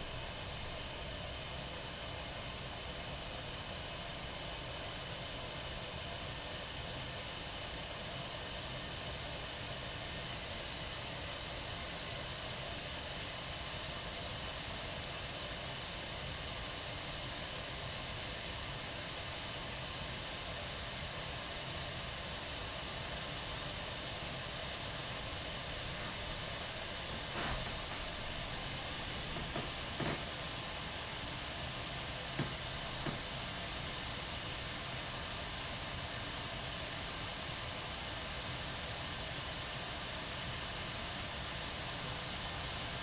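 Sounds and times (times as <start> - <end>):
kettle boiling: 22.5 - 36.9.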